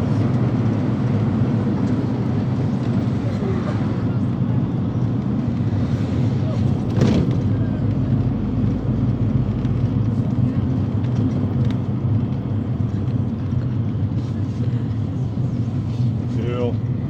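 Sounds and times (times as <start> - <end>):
minibus cabin engine and road drone: 0.0 - 17.0.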